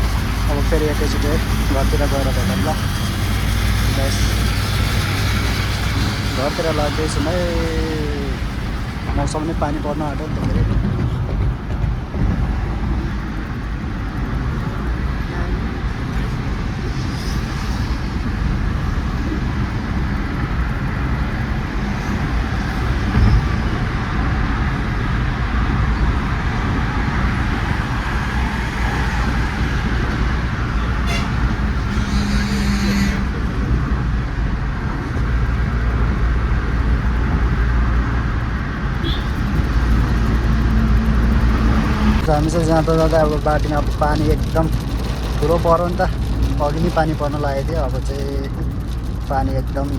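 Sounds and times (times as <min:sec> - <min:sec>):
engine and road rumble: 0:00.0 - 0:49.9
vehicle horn: 0:30.7 - 0:33.4, 0:39.0 - 0:39.4.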